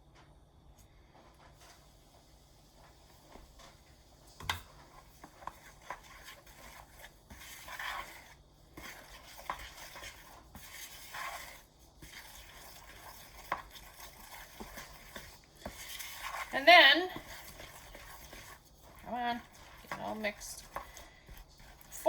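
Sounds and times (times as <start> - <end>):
spoon stirring thick mixture: 1.6 - 22.0
spoon scraping bowl: 4.4 - 22.0.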